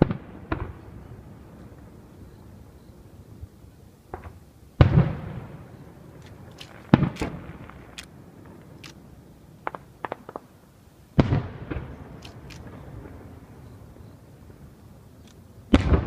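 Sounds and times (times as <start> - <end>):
firework pops and cracks: 0.0 - 0.8, 4.1 - 5.5, 6.2 - 9.0, 9.6 - 10.6, 11.2 - 12.9, 15.2 - 16.0
firework booms with echo: 0.0 - 1.2, 4.1 - 5.7, 6.3 - 8.7, 9.6 - 10.5, 11.2 - 13.5, 15.7 - 16.0.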